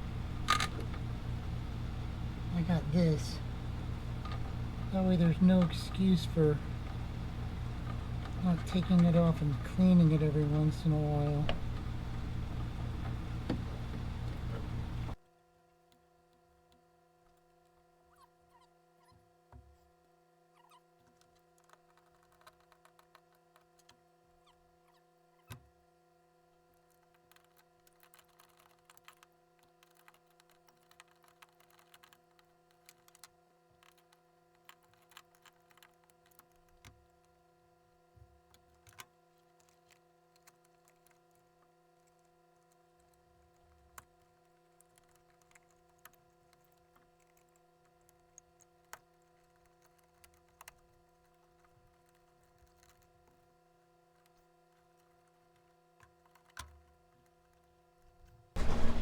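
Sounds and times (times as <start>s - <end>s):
low electrical hum: 0.0s - 19.0s, 25.7s - 59.0s
loud knock: 58.6s - 59.0s.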